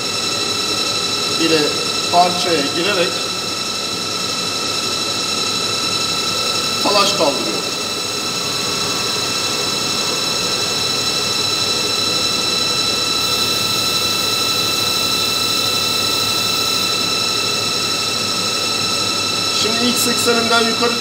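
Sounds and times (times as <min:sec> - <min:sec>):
high whining drive tones: 0:00.0 - 0:21.0
lathe machine hum: 0:00.0 - 0:21.0.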